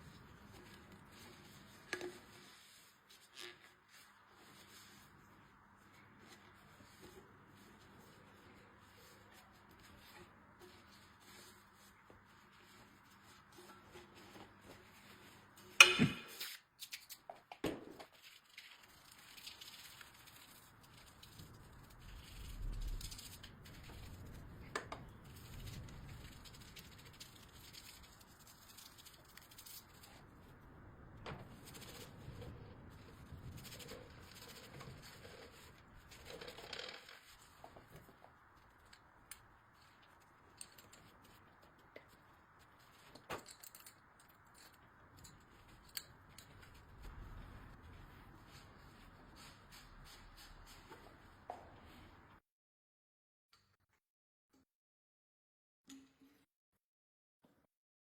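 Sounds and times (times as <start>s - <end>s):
sharp knock: 15.8s - 16.4s.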